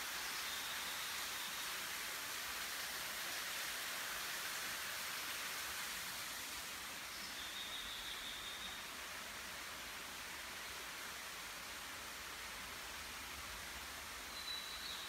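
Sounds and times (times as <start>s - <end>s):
waterfall splashing: 0.0s - 7.7s.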